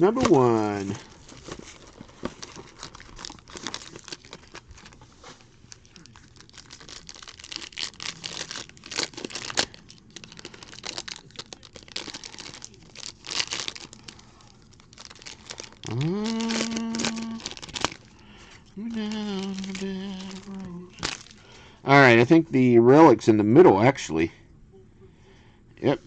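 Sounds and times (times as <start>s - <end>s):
plastic wrapping tearing and crinkling: 0.2s - 18.2s, 18.8s - 21.5s.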